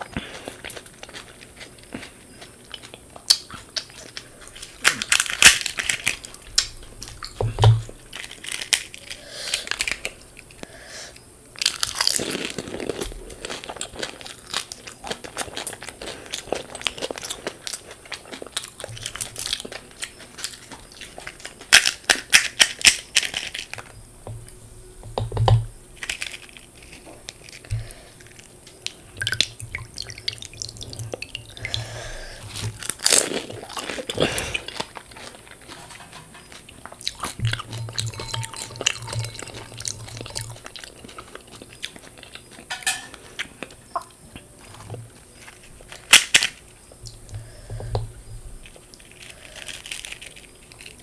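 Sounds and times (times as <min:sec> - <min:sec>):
crunching and chewing crisp shells: 0:00.0 - 0:51.0.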